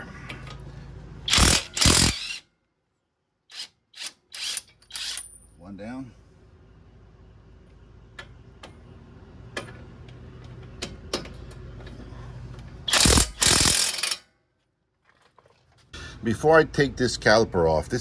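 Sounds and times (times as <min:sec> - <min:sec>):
ratchet wrench clicking: 0:01.3 - 0:02.4, 0:03.5 - 0:05.3, 0:12.9 - 0:14.2.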